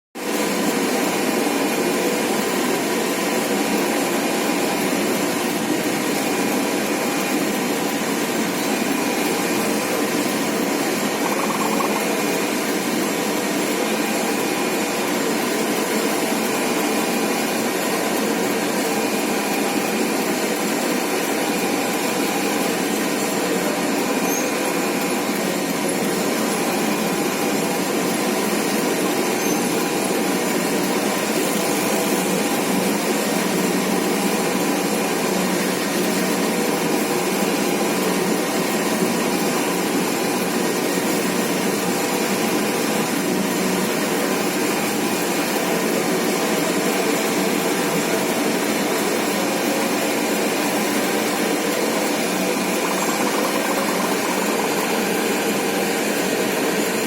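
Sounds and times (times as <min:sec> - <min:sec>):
crossing warning tone: 0:11.2 - 0:12.2, 0:52.6 - 0:55.0.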